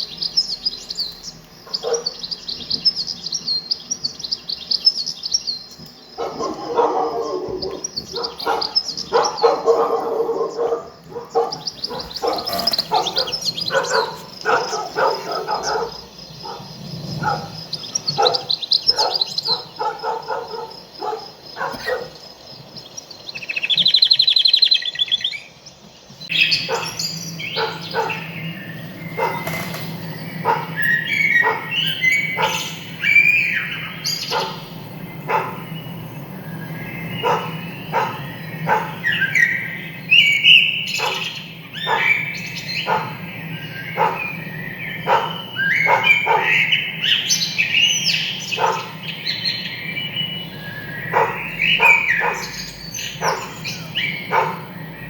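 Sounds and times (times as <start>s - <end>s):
small birds chirping: 0.0s - 55.0s
dog yapping: 6.2s - 22.2s, 26.6s - 28.3s, 29.1s - 33.3s, 34.2s - 34.7s, 35.3s - 35.7s, 37.2s - 39.5s, 41.0s - 42.2s, 42.8s - 43.2s, 45.0s - 46.7s, 48.6s - 49.0s, 51.1s - 54.7s.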